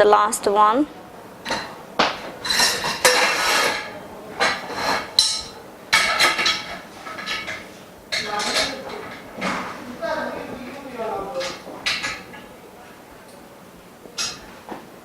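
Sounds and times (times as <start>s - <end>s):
metal bars knocking and clinking: 1.4s - 9.6s, 14.2s - 14.4s.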